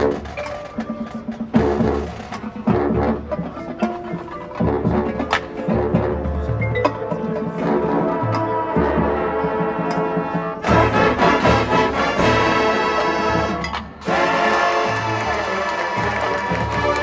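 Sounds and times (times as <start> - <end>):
marching band playing: 0.0 - 17.0.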